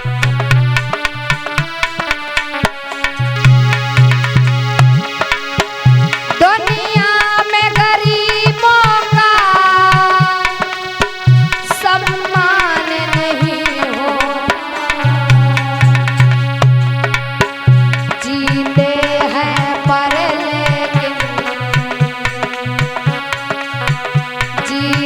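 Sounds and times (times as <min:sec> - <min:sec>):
sliding melodic line: 0:00.0 - 0:13.6
held accompanying tones: 0:00.0 - 0:25.0.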